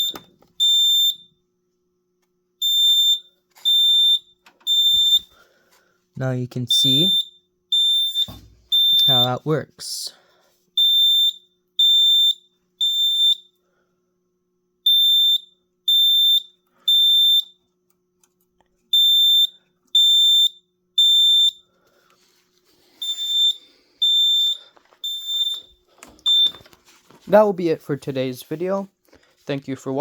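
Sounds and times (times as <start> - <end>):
fire alarm high-pitched beeps: 0.0 - 1.5, 2.6 - 5.4, 6.6 - 9.5, 10.8 - 13.6, 14.8 - 17.8, 18.9 - 21.7, 22.9 - 26.7.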